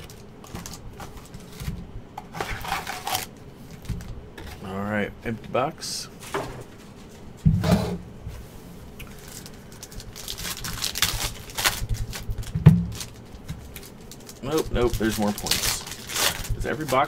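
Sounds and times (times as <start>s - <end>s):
cardboard and wrappers rustling: 0.0s - 4.8s, 9.1s - 17.0s.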